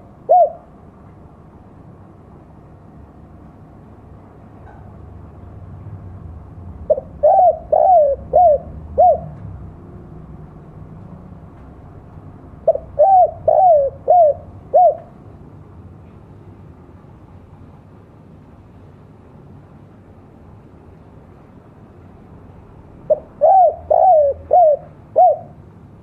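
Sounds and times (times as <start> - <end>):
dove cooing: 0.0 - 0.8, 6.9 - 9.4, 12.6 - 15.2, 23.1 - 25.6.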